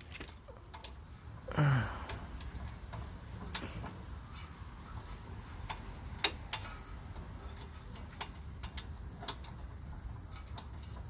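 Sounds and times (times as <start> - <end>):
metallic clicks and taps of tools: 5.6 - 9.7.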